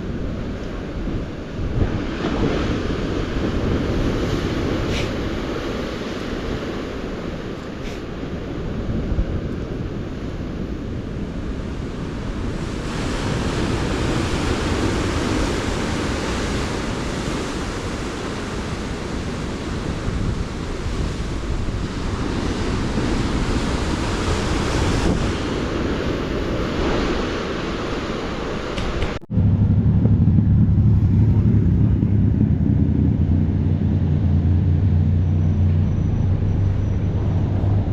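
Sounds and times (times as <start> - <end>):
ocean surf: 0.0 - 29.3
wind buffeting microphone: 0.0 - 37.9.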